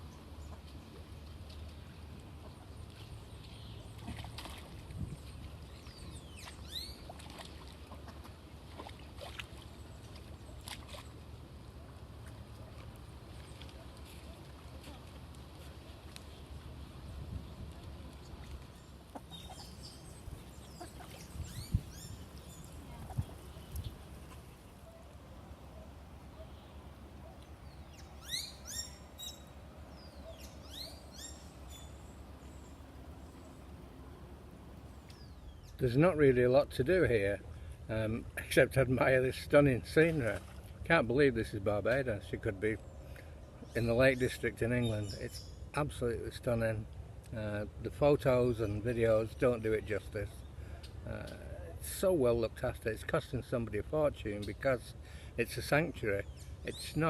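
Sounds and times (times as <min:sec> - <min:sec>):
sweeping whistled bird calls: 0:05.6 - 0:07.1, 0:18.7 - 0:24.0, 0:26.3 - 0:33.5, 0:35.0 - 0:35.8, 0:43.6 - 0:45.7, 0:56.2 - 0:57.0
bird chirps: 0:05.7 - 0:07.0, 0:18.8 - 0:24.0, 0:26.3 - 0:33.6.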